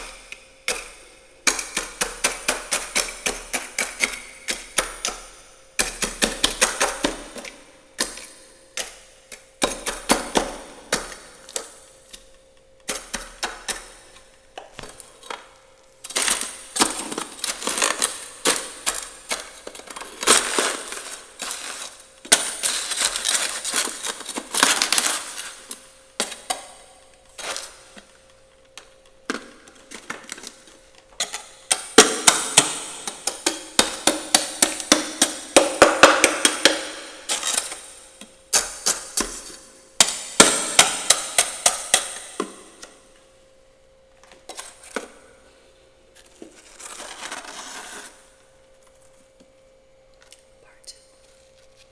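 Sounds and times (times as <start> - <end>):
faint steady hum: 0.0 - 51.9
ice being scraped and chipped: 16.1 - 26.5, 31.3 - 37.8, 46.5 - 48.3.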